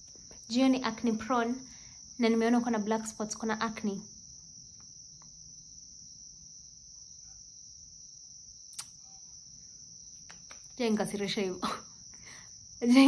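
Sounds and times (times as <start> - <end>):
crickets droning: 0.0 - 13.0
sharp click: 8.7 - 9.0.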